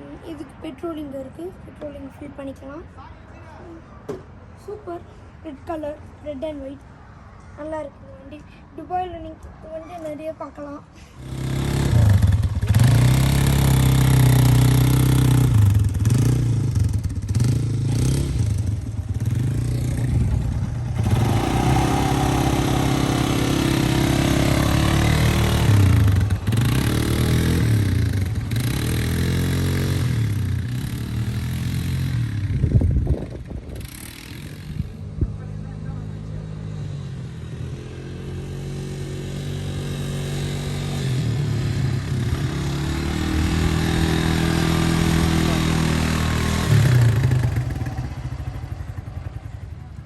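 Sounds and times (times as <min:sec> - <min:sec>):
quad bike engine revving: 0:11.2 - 0:50.0.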